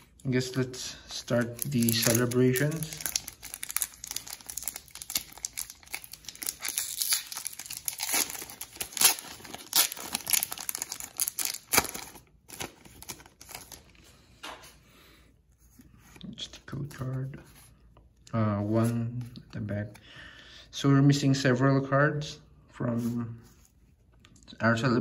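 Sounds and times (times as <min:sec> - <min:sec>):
foil wrapper crinkling and tearing: 0:01.2 - 0:13.9.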